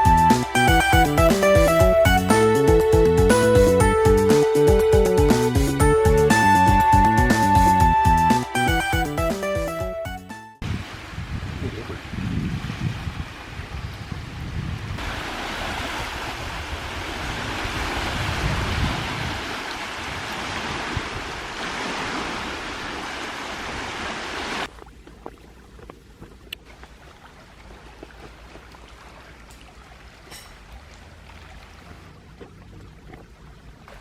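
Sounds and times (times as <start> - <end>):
wind: 0.0 - 7.0, 10.6 - 34.0
lake waves rushing: 10.6 - 24.8.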